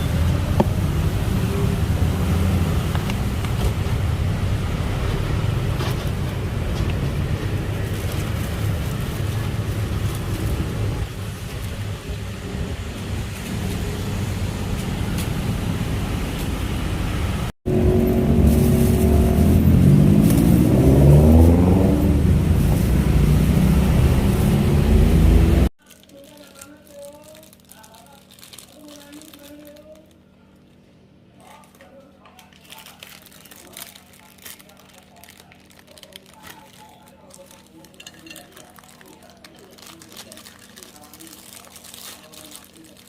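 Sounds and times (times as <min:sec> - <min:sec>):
vehicle engine accelerating: 0:00.0 - 0:25.7
road traffic rumble: 0:00.0 - 0:25.8.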